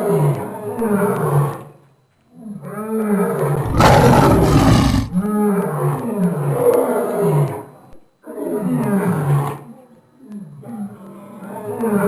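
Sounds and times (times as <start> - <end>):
lion roaring: 3.6 - 5.3.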